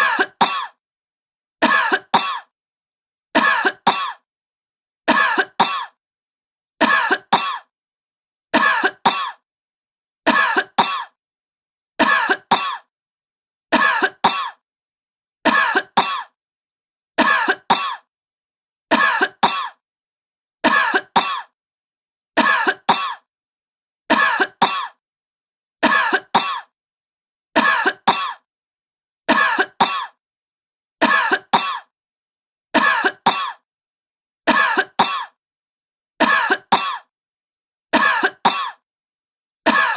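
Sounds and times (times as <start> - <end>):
woman coughing: 0.0 - 0.8, 1.6 - 2.5, 3.4 - 4.2, 5.1 - 6.0, 6.8 - 7.7, 8.6 - 9.4, 10.3 - 11.2, 12.0 - 12.9, 13.8 - 14.6, 15.5 - 16.4, 17.2 - 18.1, 19.0 - 19.8, 20.7 - 21.6, 22.4 - 23.3, 24.1 - 25.0, 25.8 - 26.7, 27.6 - 28.5, 29.3 - 30.2, 31.0 - 31.9, 32.8 - 33.6, 34.5 - 35.4, 36.2 - 37.1, 38.0 - 38.8, 39.7 - 39.9.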